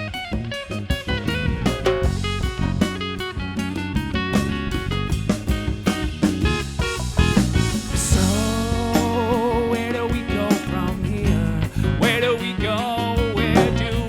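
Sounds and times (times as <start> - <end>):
acoustic band playing country-folk: 0.0 - 14.0
guitar chords: 0.0 - 14.0.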